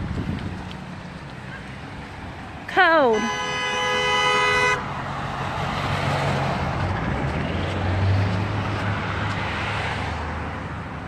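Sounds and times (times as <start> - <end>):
cars driving past: 0.0 - 11.0
car horn: 3.0 - 5.0.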